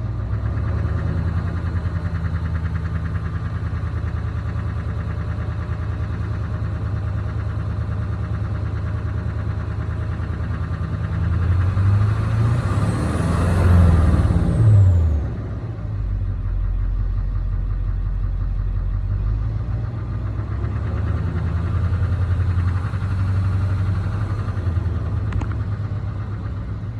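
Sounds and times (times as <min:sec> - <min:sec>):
diesel engine revving: 0:11.0 - 0:26.9
engine ticking: 0:16.4 - 0:26.9.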